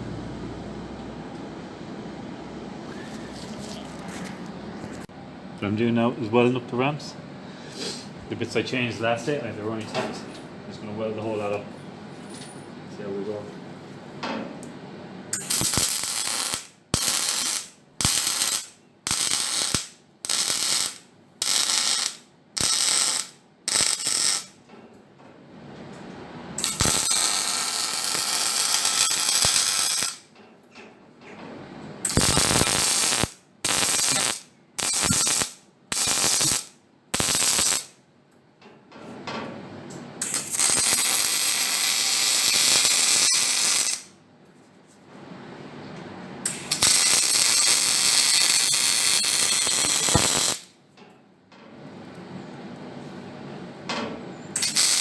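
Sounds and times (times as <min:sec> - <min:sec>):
welder arc crackling: 0:15.4 - 0:24.6, 0:26.6 - 0:30.3, 0:32.1 - 0:38.0, 0:40.2 - 0:44.1, 0:46.5 - 0:50.8, 0:54.6 - 0:55.0.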